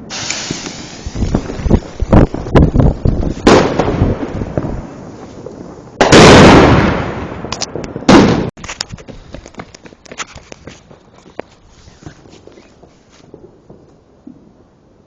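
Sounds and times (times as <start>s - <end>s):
very loud firework blast: 0.0s - 8.6s
fireworks bangs: 0.0s - 9.6s, 10.8s - 14.6s
faint firework crackles: 0.0s - 15.0s.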